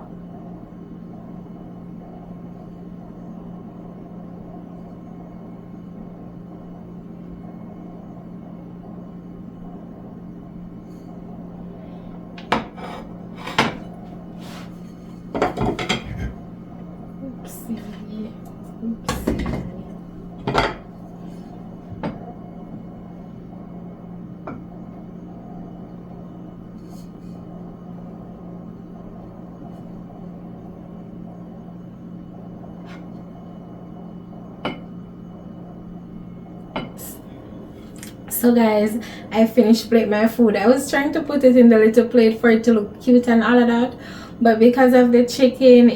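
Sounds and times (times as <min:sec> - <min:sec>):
steady low hum: 0:00.0 - 0:45.9
dishes and cutlery clattering: 0:12.4 - 0:14.0, 0:15.4 - 0:16.4, 0:19.1 - 0:20.9.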